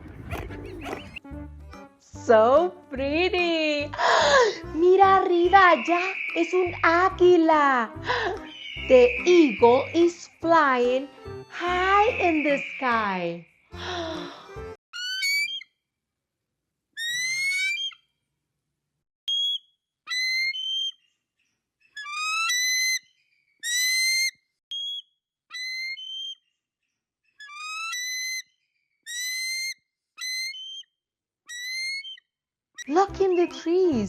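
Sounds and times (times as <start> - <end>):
eagle whistled calls: 0.3 - 1.2, 5.6 - 7.1, 8.4 - 10.4, 12.0 - 13.1, 15.0 - 15.7, 17.0 - 18.0, 19.3 - 21.0, 22.0 - 23.0, 23.6 - 26.4, 27.4 - 28.4, 29.1 - 30.9, 31.5 - 32.2.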